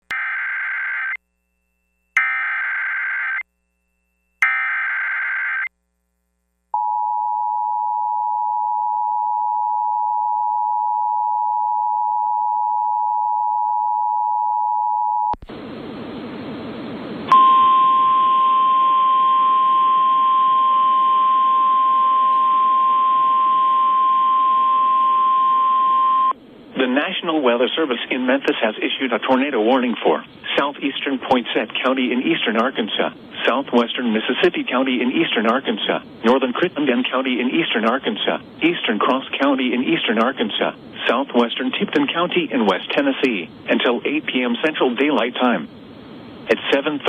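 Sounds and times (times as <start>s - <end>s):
steady warning alarm tone: 2.2s - 3.4s, 4.4s - 5.7s, 17.3s - 26.4s
two-tone attention signal: 17.3s - 26.3s
radio static: 46.5s - 47.0s.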